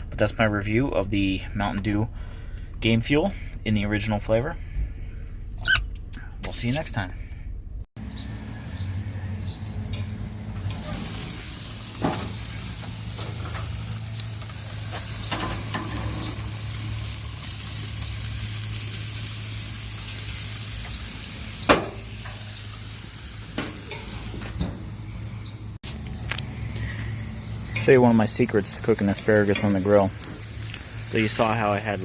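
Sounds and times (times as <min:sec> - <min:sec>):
food sizzling on grill: 0:08.0 - 0:26.1, 0:27.4 - 0:32.0.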